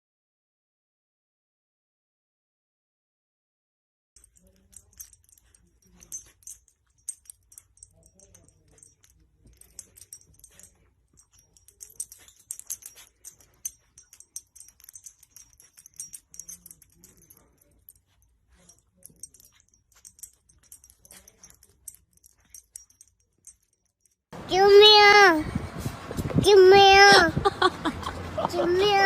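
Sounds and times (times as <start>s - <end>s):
puppy paws clicking and jingling: 4.2s - 29.0s.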